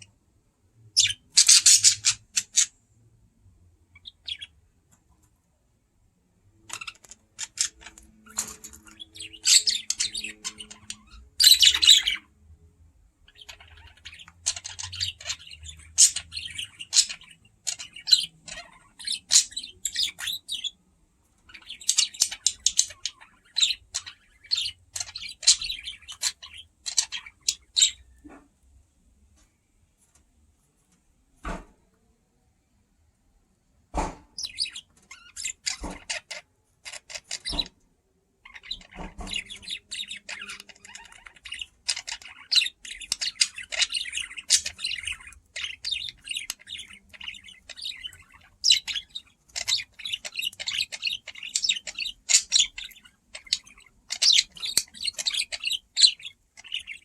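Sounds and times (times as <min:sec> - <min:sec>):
budgerigar chirping: 0:00.9 - 0:02.8, 0:03.9 - 0:04.6, 0:06.7 - 0:12.3, 0:13.2 - 0:20.8, 0:21.5 - 0:28.1, 0:34.4 - 0:37.7, 0:38.4 - 0:57.0.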